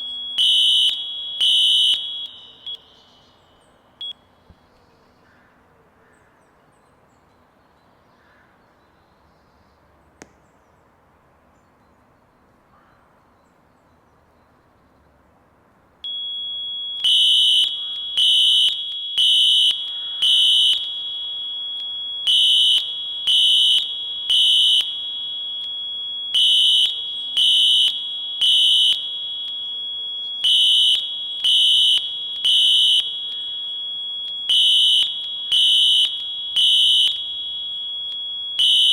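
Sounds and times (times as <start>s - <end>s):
steady high-pitched alarm tone: 0.0s - 3.0s, 16.0s - 38.9s
buzzy fire alarm beeps: 0.0s - 4.4s, 16.0s - 38.9s.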